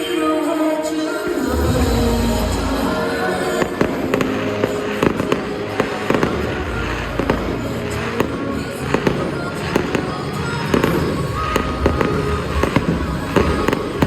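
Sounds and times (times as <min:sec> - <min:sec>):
music playing: 0:00.0 - 0:14.0
fireworks bangs and crackles: 0:03.5 - 0:14.0.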